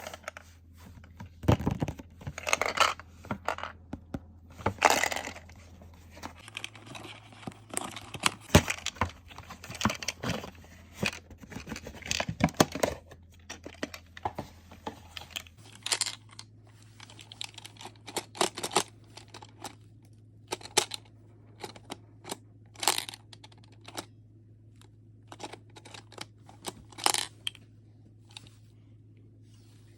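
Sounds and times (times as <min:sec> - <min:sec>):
clicks and knocks of handling: 0:00.0 - 0:16.4
faint low hum: 0:00.0 - 0:29.9.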